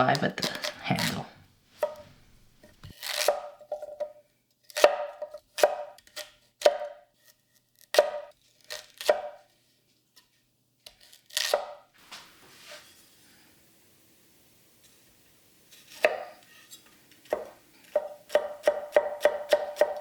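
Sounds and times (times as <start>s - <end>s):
knife chopping on cutting board: 1.8s - 4.1s, 4.7s - 7.0s, 7.9s - 9.4s, 11.4s - 11.8s, 16.0s - 16.4s, 17.3s - 20.0s.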